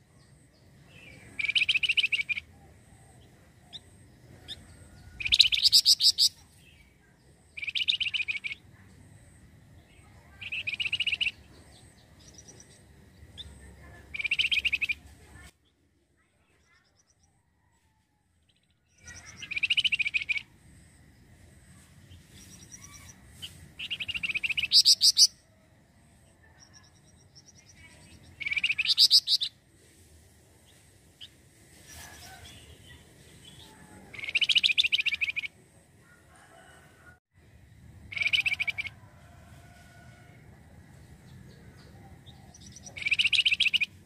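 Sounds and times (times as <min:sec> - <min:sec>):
faint background hum: 0:00.0 - 0:44.0
songbird rattling chatters: 0:05.2 - 0:06.4.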